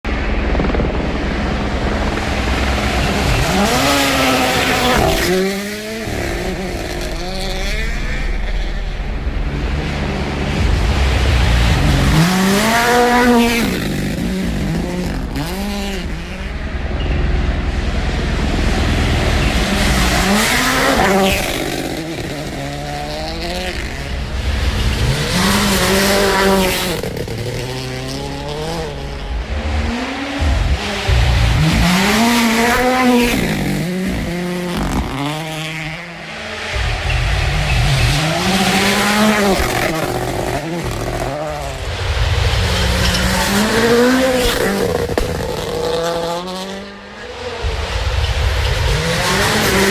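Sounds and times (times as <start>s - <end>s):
rally car engines revving: 0.1s - 49.9s.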